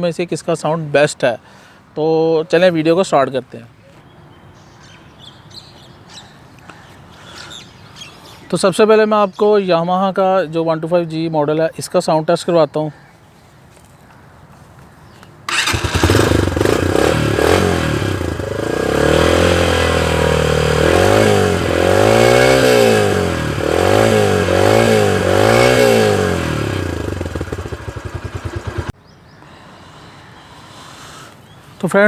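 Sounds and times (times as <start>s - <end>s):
motorcycle engine revving: 15.5s - 29.0s
motorcycle engine starting and idling: 15.5s - 29.0s.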